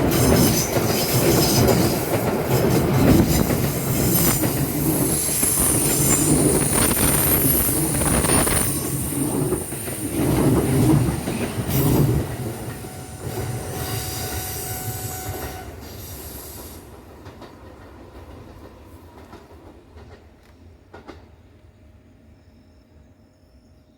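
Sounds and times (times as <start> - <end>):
train wheels rumbling over rails: 0.0 - 21.8.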